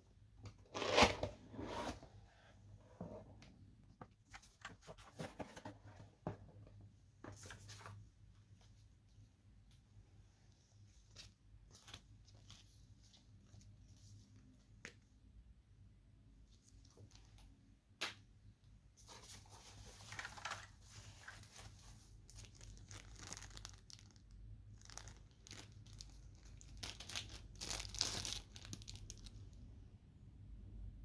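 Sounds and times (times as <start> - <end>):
packaging being torn and crinkled: 22.3 - 29.4.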